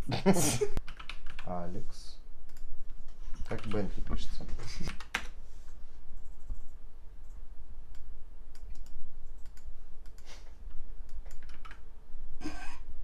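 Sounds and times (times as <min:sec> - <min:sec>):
faint steady hum: 0:00.0 - 0:13.0
keyboard keys typing: 0:00.8 - 0:01.5, 0:03.4 - 0:03.8, 0:04.8 - 0:05.3, 0:07.9 - 0:10.3, 0:11.0 - 0:11.8.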